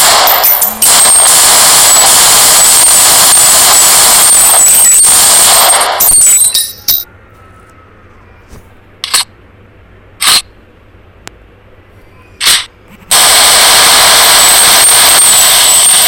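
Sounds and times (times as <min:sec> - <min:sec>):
sharp click: 0:09.0 - 0:09.3
submachine gun bursts: 0:12.4 - 0:16.0.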